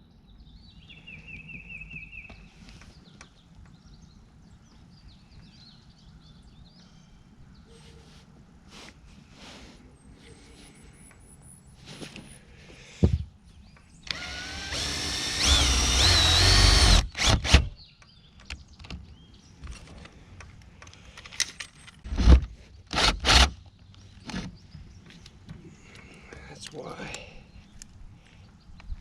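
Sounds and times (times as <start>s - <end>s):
cordless drill running: 14.1s - 17.8s, 23.0s - 23.4s.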